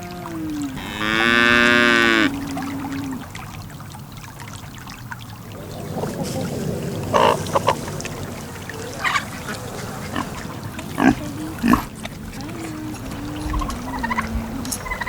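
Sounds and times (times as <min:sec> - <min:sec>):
farm animals calling: 0:00.6 - 0:02.5, 0:07.1 - 0:15.0.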